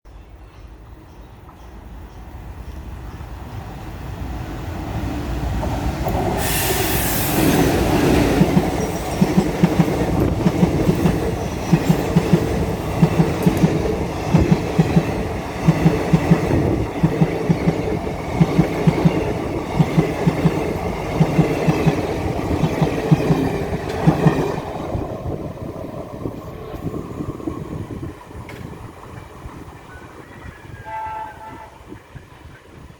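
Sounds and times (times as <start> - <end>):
train rumbling: 0.8 - 32.9
train wheels clacking on rails: 5.5 - 25.1
rush of hissing noise: 6.1 - 8.2.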